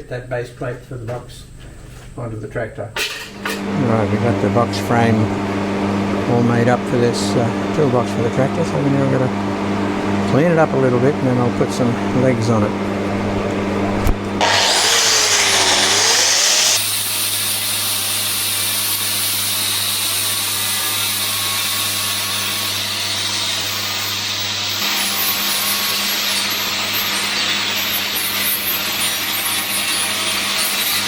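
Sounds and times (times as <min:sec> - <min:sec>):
angle grinder grinding metal: 0:14.4 - 0:31.0.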